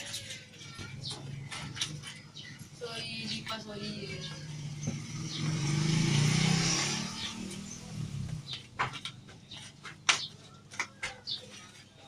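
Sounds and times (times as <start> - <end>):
vehicle passing by: 4.1 - 8.8.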